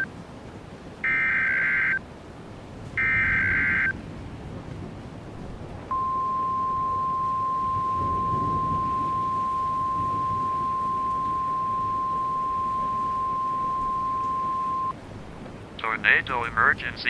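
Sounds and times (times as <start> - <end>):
steady high alarm beep: 3.0 - 3.9, 5.9 - 14.9.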